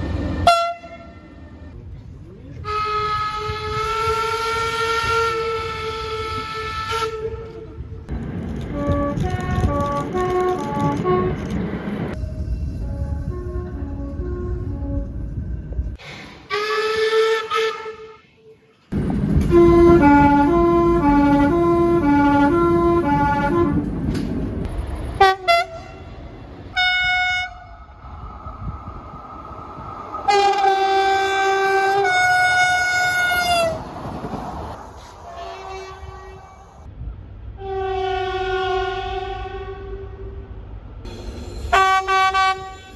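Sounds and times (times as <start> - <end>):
rumble of passing train: 0.0 - 42.9
train horn blasts: 0.4 - 1.2, 2.6 - 8.0, 8.7 - 18.2, 19.4 - 23.9, 25.2 - 28.0, 30.3 - 33.8, 35.2 - 36.9, 37.6 - 40.5, 41.1 - 42.9.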